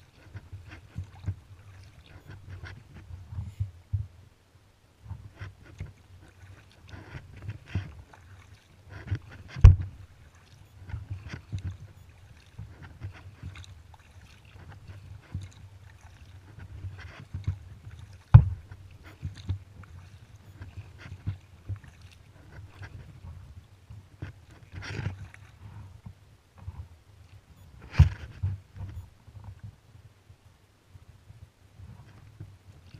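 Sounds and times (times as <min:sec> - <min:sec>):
kayak paddle strokes splashing: 0:00.0 - 0:04.2, 0:05.0 - 0:29.8.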